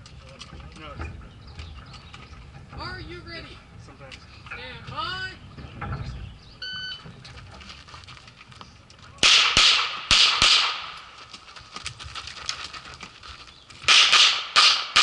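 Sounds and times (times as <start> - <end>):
handgun shots: 9.2 - 11.1, 13.9 - 15.0.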